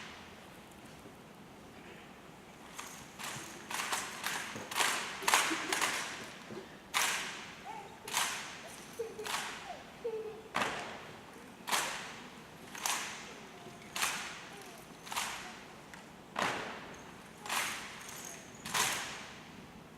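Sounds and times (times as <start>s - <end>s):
rifle slaps and cracks: 2.8s - 9.6s, 10.6s - 19.5s.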